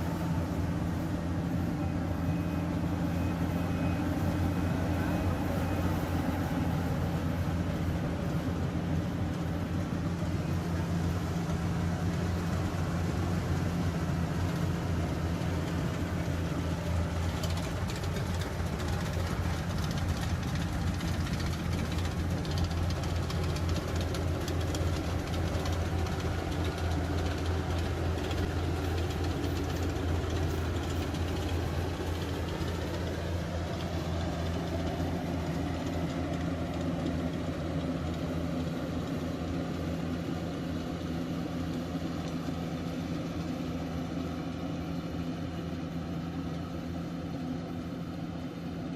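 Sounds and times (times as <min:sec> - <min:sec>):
harvesting machine engine running: 0:00.0 - 0:48.9
faint clatter: 0:14.4 - 0:40.3.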